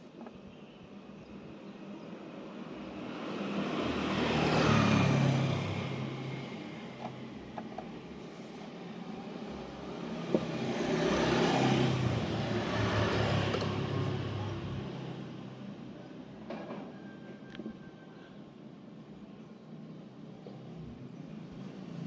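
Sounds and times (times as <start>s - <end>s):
motor vehicles passing by: 2.5s - 16.1s, 20.6s - 22.0s.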